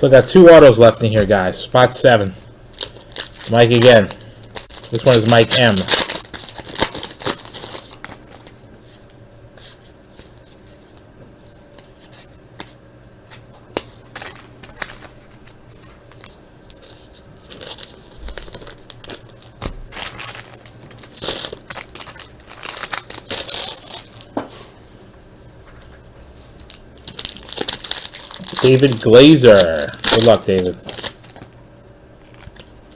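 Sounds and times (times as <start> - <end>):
card pack wrapper tearing: 2.7 - 8.5, 13.7 - 24.3, 26.6 - 31.5
wrapper crinkling: 2.7 - 8.7, 13.7 - 24.3, 26.5 - 32.9.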